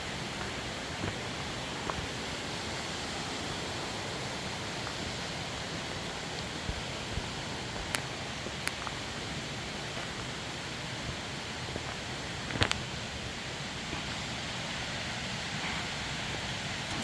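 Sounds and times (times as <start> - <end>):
waterfall and creek rushing: 0.0 - 17.0.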